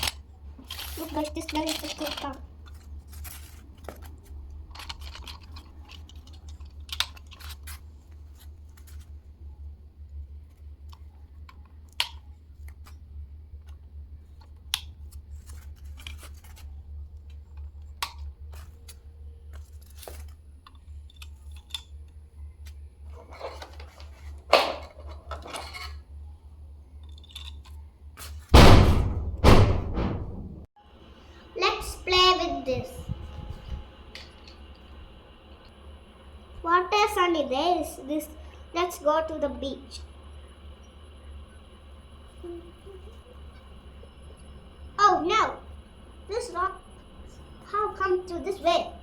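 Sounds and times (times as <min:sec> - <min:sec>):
plastic toy pieces clicking: 0:00.0 - 0:02.8
steady low hum: 0:00.0 - 0:49.0
heavy thump: 0:28.6 - 0:30.7.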